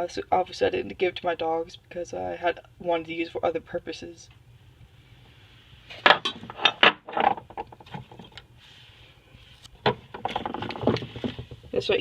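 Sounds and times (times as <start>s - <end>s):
objects being handled: 5.9s - 8.5s, 9.4s - 11.8s.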